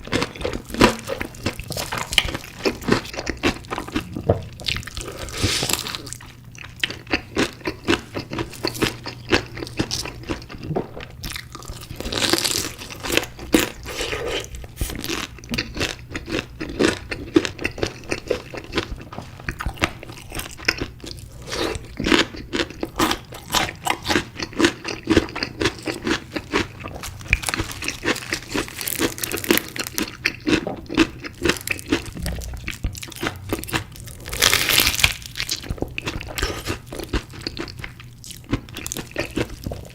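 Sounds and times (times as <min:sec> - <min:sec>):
crunching crispy chicken: 0:19.6 - 0:39.9.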